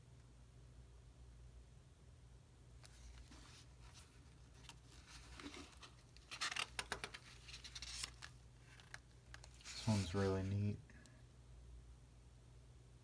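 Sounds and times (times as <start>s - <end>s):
low steady hum: 0.0s - 13.0s
paper pages rustling: 2.8s - 10.6s.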